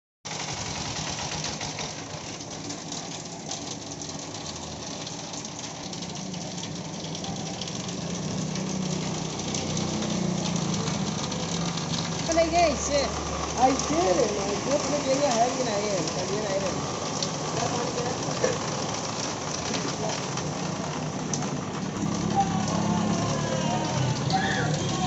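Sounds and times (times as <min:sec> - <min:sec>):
engine running: 0:00.3 - 0:04.8
heavy rain: 0:00.3 - 0:25.0.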